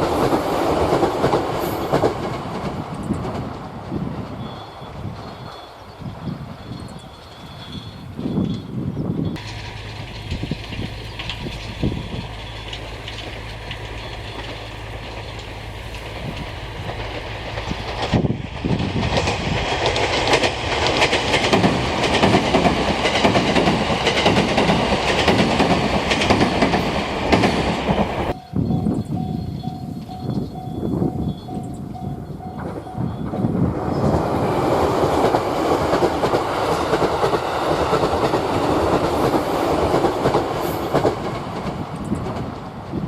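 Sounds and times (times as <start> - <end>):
electric train running past: 0.0 - 43.0
wheels clattering over rails: 9.3 - 28.4, 29.0 - 43.0.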